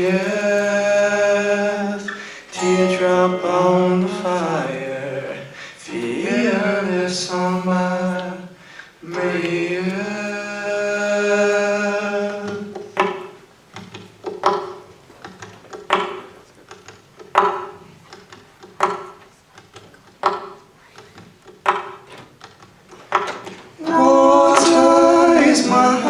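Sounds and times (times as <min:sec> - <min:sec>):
acoustic guitar: 0:00.0 - 0:13.4
man singing a held note: 0:01.1 - 0:07.4.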